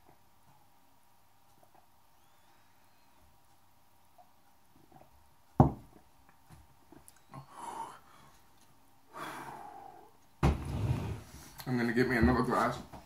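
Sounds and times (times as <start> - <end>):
person sighing heavily: 9.1 - 10.1
thump: 10.4 - 10.7.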